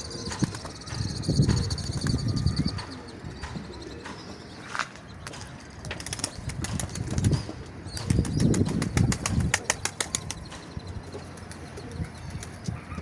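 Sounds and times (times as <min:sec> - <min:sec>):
pigeons flapping wings: 0:05.8 - 0:07.4, 0:08.0 - 0:10.5.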